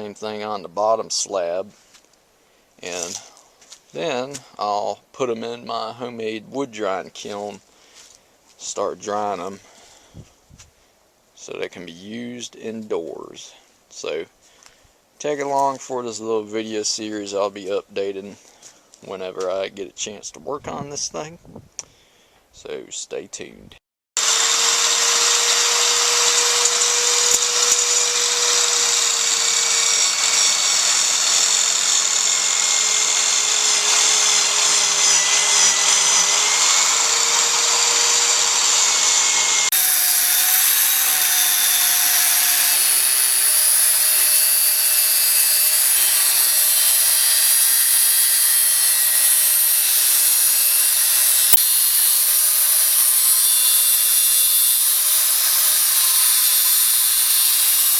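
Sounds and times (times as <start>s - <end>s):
track saw cutting wood: 24.2s - 57.9s.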